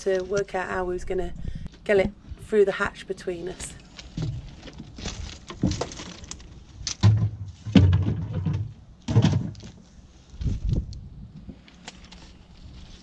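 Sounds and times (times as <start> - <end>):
knocks and thuds of heavy box: 7.0 - 9.8.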